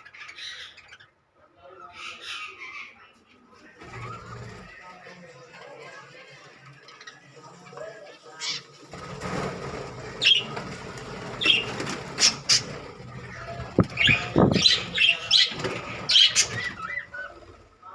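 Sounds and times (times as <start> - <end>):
budgerigars chirping and squawking: 0.0 - 3.2, 8.3 - 17.6.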